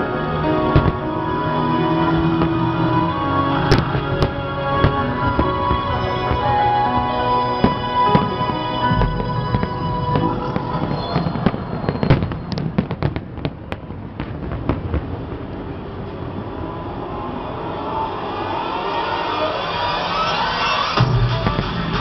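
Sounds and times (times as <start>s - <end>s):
music: 0.0s - 11.3s, 18.2s - 22.0s
fireworks bangs and crackles: 0.3s - 17.1s, 19.2s - 22.0s.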